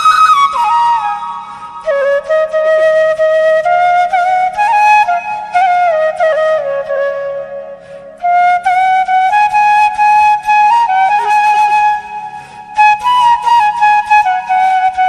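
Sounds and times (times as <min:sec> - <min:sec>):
bamboo flute melody: 0:00.0 - 0:15.0.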